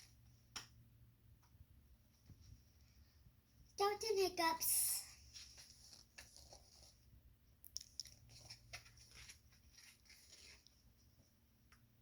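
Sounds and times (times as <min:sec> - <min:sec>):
paper rustling: 0:05.0 - 0:07.1, 0:07.9 - 0:11.3.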